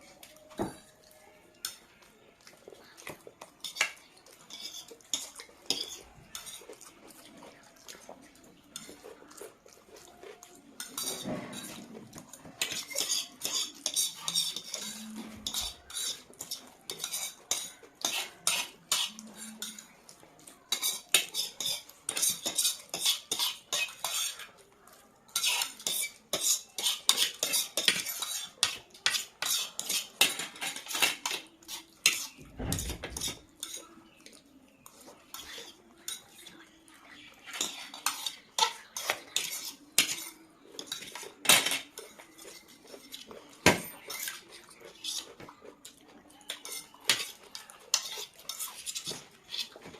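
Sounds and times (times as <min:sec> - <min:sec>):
utensils clicking on a plate: 0:10.2 - 0:20.0, 0:20.6 - 0:24.5, 0:25.3 - 0:36.5, 0:37.4 - 0:45.6, 0:46.4 - 0:49.9.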